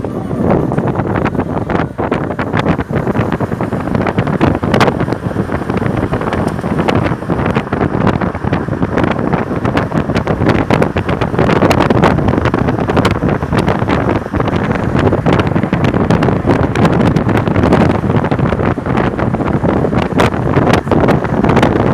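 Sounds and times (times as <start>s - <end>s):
strong wind buffeting microphone: 0.0s - 21.9s.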